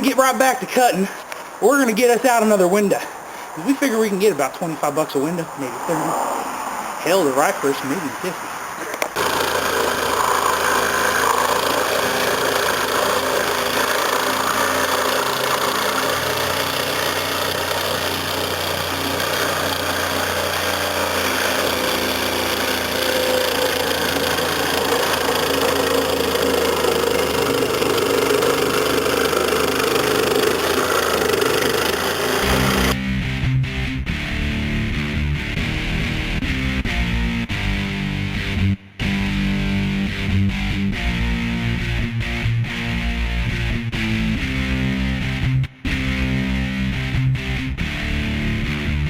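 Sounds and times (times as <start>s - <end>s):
electric saw cutting fiberglass: 7.1s - 33.1s.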